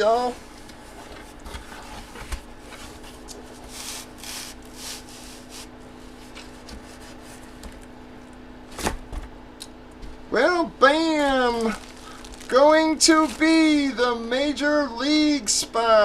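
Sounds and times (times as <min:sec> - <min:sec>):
packaging rustling: 0:11.2 - 0:14.0.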